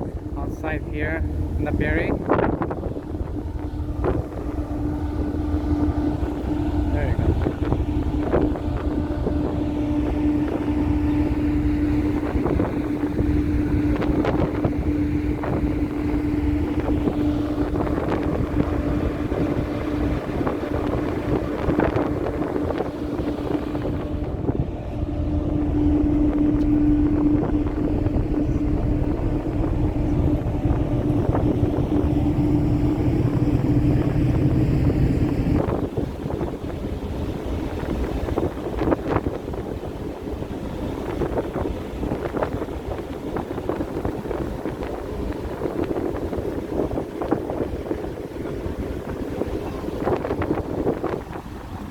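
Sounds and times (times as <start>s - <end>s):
ferry engines humming: 0.0s - 51.9s
wind buffeting microphone: 0.0s - 51.9s.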